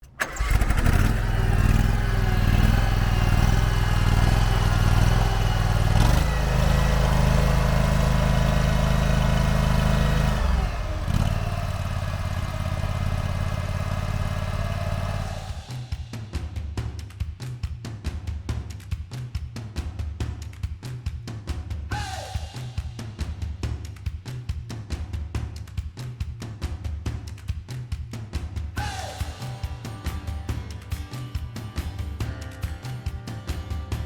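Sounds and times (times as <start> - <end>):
skid steer engine running: 0.0 - 15.7.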